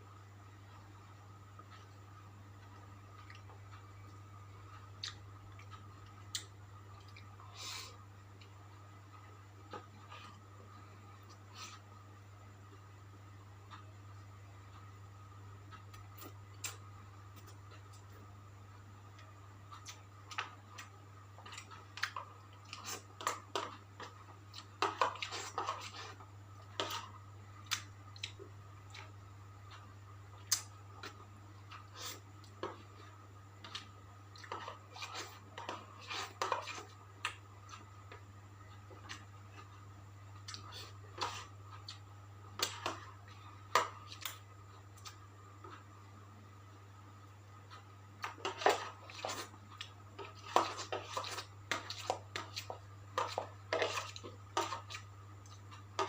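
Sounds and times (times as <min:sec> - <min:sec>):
steady low hum: 0:00.0 - 0:56.0
person chewing with wet smacks: 0:02.6 - 0:08.6, 0:15.7 - 0:18.2, 0:19.1 - 0:45.9, 0:47.7 - 0:56.0.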